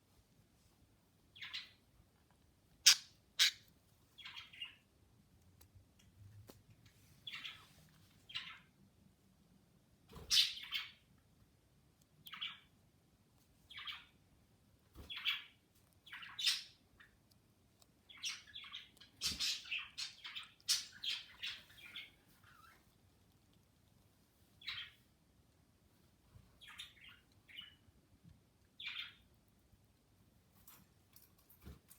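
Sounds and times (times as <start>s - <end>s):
budgerigar chirping: 2.8s - 3.6s.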